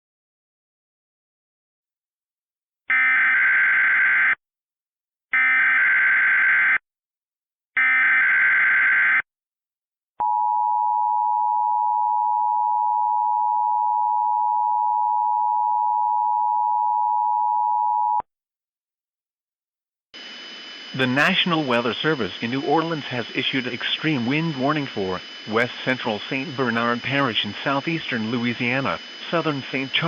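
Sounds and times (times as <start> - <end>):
digital header tone bursts: 20.2 - 30.0.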